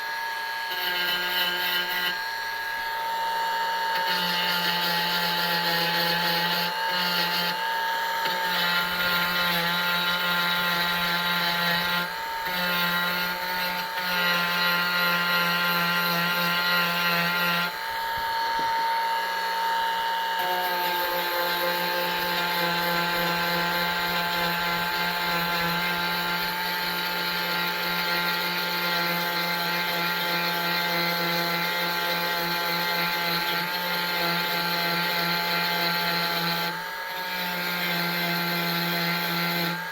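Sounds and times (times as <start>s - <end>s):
rotary tool whining: 0.0s - 39.9s.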